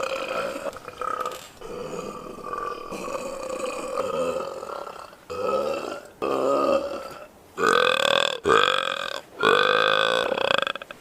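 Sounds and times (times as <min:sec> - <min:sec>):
person belching: 0:00.0 - 0:10.9.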